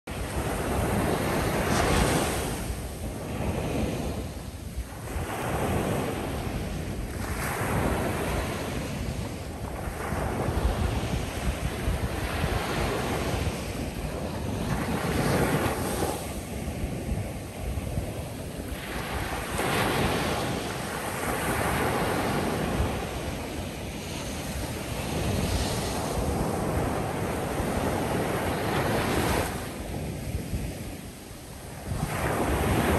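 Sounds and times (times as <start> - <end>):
ocean surf breaking: 0.1 - 17.6
wind rumbling on microphone: 0.1 - 32.9.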